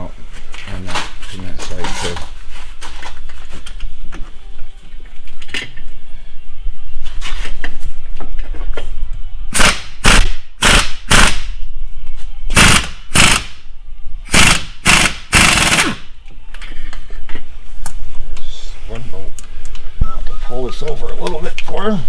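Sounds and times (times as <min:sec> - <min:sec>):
impact wrench hammering: 0:09.5 - 0:11.5, 0:12.5 - 0:13.6, 0:14.3 - 0:16.0.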